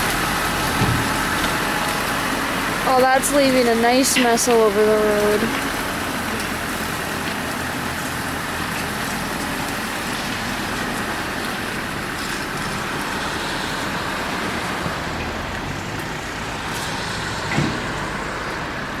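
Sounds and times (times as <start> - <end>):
vehicle and road noise: 0.0 - 19.0
brief thump: 17.5 - 17.9.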